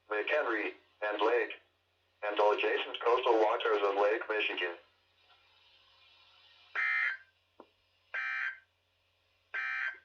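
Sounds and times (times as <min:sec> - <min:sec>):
faint hiss: 0:04.8 - 0:06.8.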